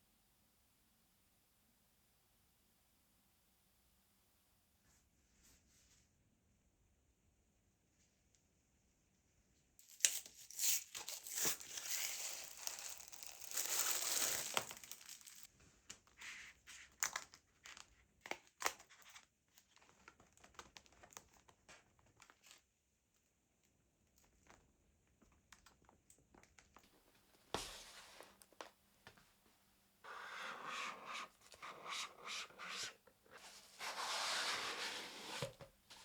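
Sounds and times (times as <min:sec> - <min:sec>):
plastic packaging crinkling: 0:09.8 - 0:15.5.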